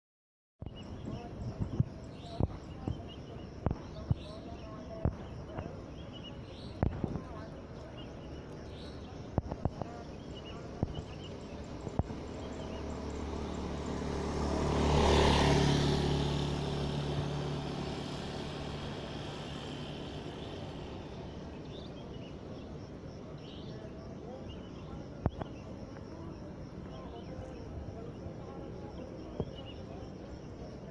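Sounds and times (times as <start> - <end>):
vehicle passing by: 10.4 - 23.5.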